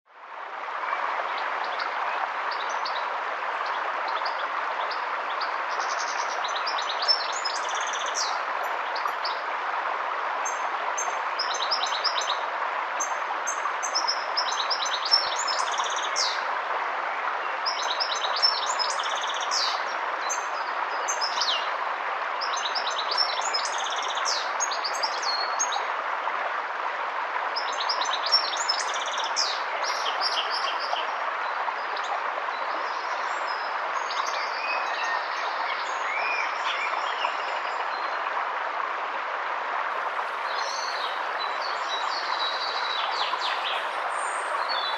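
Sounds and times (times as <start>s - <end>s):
river rushing: 0.2s - 44.9s
songbird singing: 13.0s - 16.5s, 17.5s - 21.7s, 22.4s - 25.9s, 27.6s - 38.2s, 40.1s - 44.9s.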